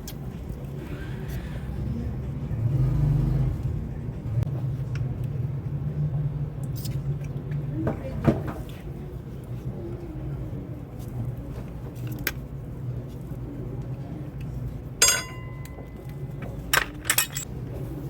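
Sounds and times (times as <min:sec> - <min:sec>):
steady low hum: 0:12.6 - 0:17.5
metal objects clinking: 0:15.0 - 0:16.1, 0:16.7 - 0:17.5.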